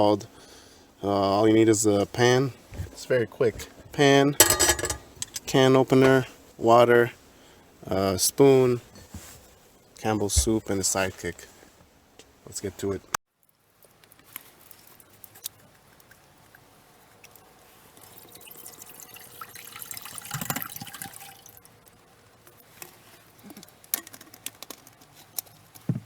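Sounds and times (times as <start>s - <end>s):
water pouring into a pan: 17.9s - 21.6s.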